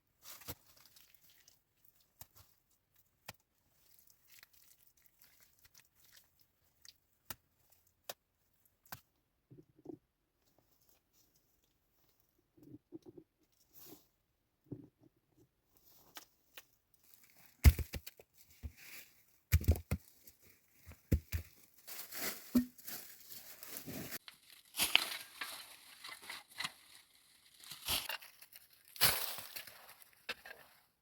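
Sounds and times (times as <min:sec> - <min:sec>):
rustling and crinkling handling: 0:15.7 - 0:31.0.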